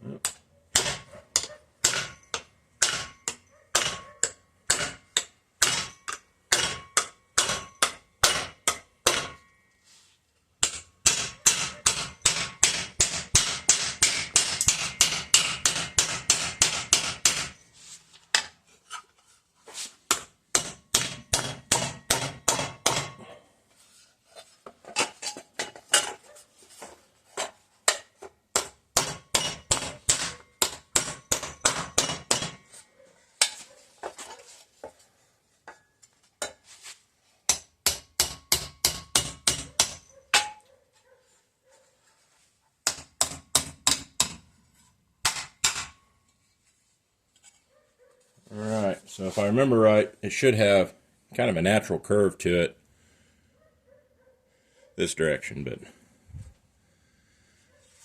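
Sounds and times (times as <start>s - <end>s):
hammer striking steel plate: 0.3s - 9.7s, 10.6s - 17.6s, 20.1s - 23.2s, 27.9s - 32.8s, 37.5s - 40.6s, 42.8s - 44.5s, 45.2s - 46.1s.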